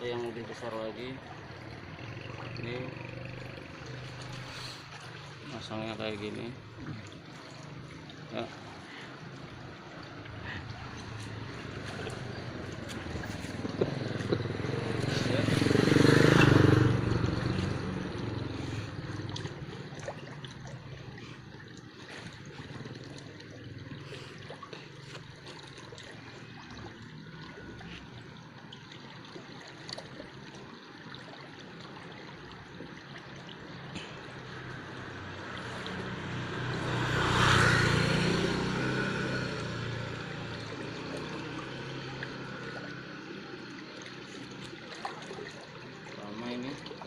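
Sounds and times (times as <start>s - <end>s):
water trickling in a drain: 0.0s - 47.0s.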